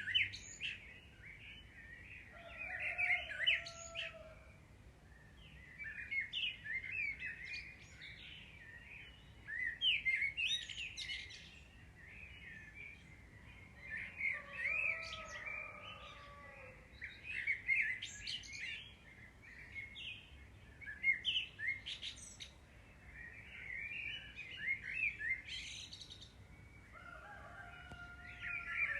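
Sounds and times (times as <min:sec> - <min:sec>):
birds chirping and twittering: 0:00.0 - 0:28.9.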